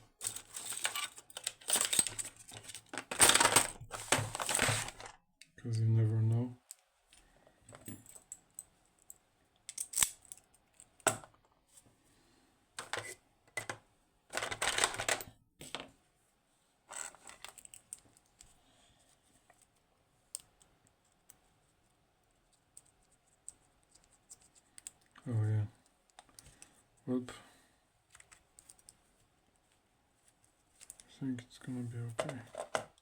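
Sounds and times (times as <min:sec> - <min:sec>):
metal lock parts clicking: 0:09.7 - 0:10.9.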